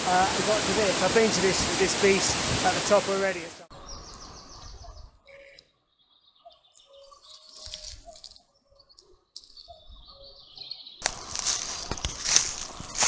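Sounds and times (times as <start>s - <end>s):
small birds chirping: 0.0s - 13.0s
loud rustling: 11.0s - 13.0s.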